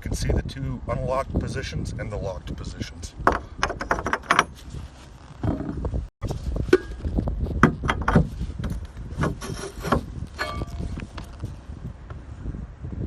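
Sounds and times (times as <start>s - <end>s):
knocks and clicks: 3.2s - 4.6s, 7.6s - 10.0s.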